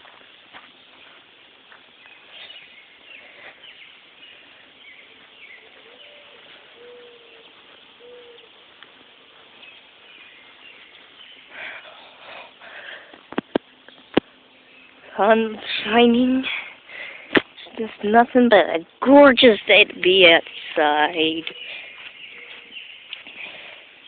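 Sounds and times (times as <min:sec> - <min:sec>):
birds chirping: 0:00.0 - 0:24.0.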